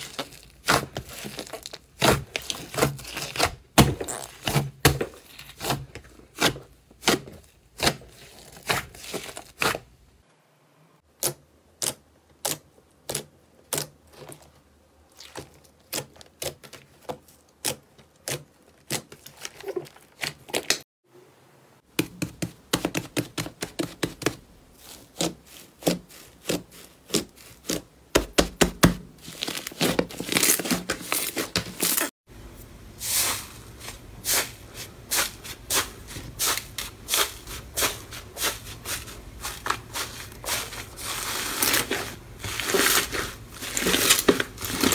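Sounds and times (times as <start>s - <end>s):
slime crackling and popping: 40.4s - 44.9s.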